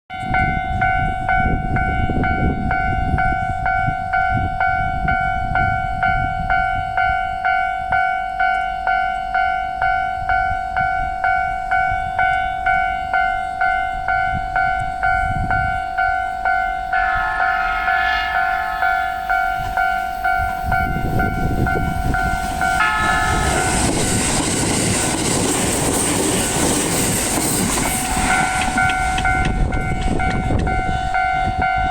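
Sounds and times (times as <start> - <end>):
level crossing warning bell ringing: 0.2 - 31.9
train wheels rushing on rail: 16.8 - 31.9.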